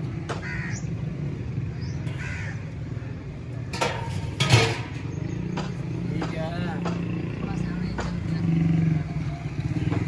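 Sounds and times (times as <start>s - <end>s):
crows cawing: 0.3s - 1.0s, 2.1s - 3.1s.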